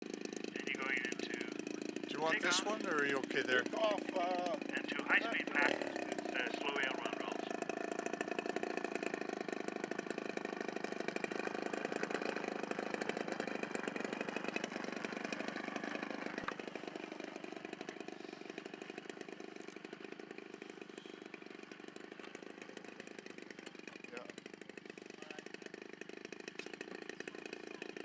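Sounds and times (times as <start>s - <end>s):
model airplane engine buzzing: 0.0s - 28.0s.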